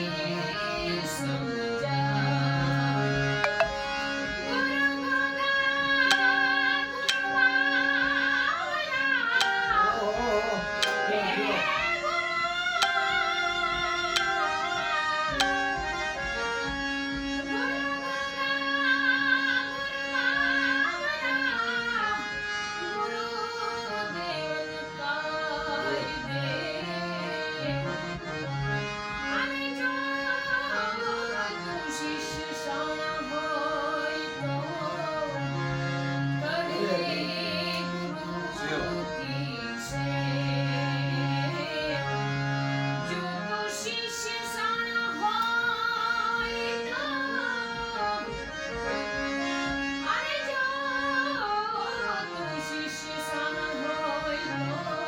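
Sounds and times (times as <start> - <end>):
woman singing: 0.0 - 16.3, 17.4 - 28.2, 29.3 - 35.5, 36.4 - 42.1, 43.0 - 48.5, 50.0 - 55.0
sustained reed accompaniment: 3.4 - 4.1, 6.1 - 8.4, 9.4 - 11.8, 12.8 - 16.6.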